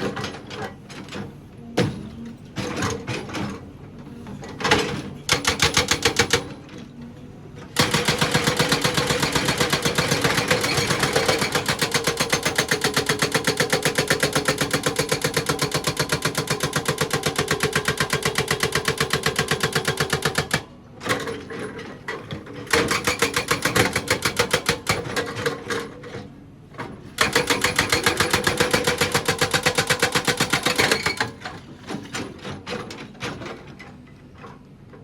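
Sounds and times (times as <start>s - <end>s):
hydraulic breaker hammering rock: 4.6s - 6.7s, 7.7s - 25.8s, 27.0s - 33.6s.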